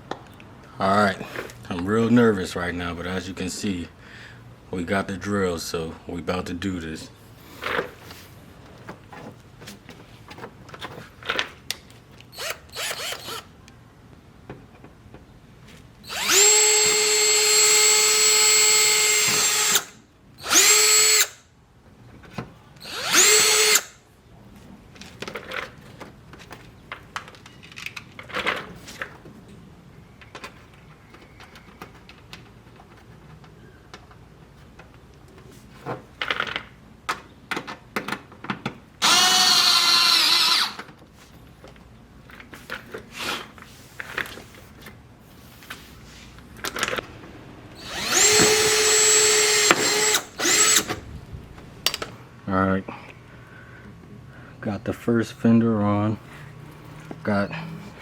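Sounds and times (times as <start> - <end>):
power drill running: 12.4 - 13.5, 16.0 - 21.4, 22.8 - 24.0, 39.0 - 40.8, 47.7 - 51.0.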